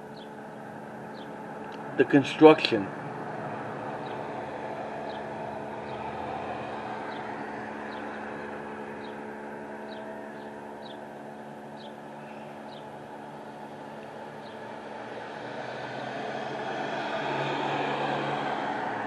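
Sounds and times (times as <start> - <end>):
bird chirping: 0.0 - 0.4, 1.1 - 1.4, 4.0 - 4.3, 5.0 - 6.1, 9.8 - 12.9, 14.4 - 14.7
construction machinery engine running: 0.0 - 19.0.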